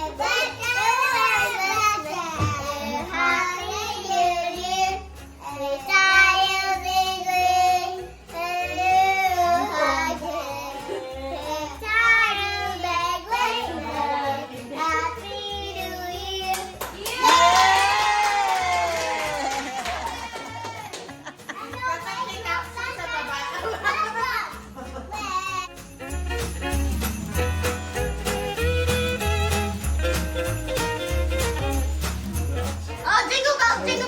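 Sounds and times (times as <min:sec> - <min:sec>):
child singing: 0:00.0 - 0:16.8
backing music with steady beat: 0:25.7 - 0:33.0.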